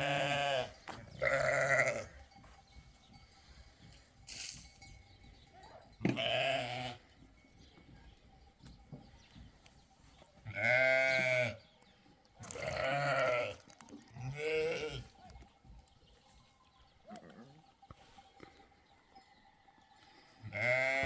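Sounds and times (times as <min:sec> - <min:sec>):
livestock bleating: 0:00.0 - 0:02.3, 0:06.0 - 0:07.2, 0:10.4 - 0:11.6, 0:12.4 - 0:15.2, 0:20.4 - 0:21.0.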